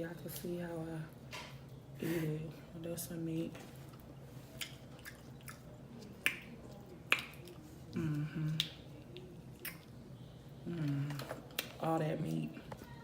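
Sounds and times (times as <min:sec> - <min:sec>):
wet smacking clicks from eating: 0:04.6 - 0:07.6, 0:08.5 - 0:09.9
person humming: 0:08.0 - 0:08.7, 0:10.7 - 0:11.3.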